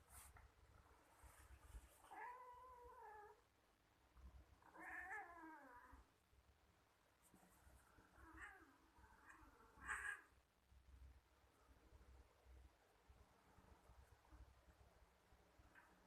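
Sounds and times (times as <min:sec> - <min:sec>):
cat meowing: 0:02.1 - 0:03.4, 0:04.7 - 0:06.0, 0:08.2 - 0:10.3.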